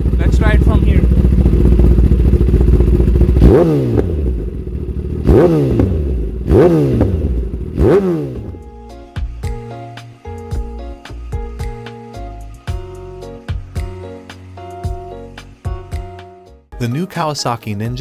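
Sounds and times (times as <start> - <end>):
motorcycle engine revving: 0.0 - 8.6
music: 8.5 - 18.0.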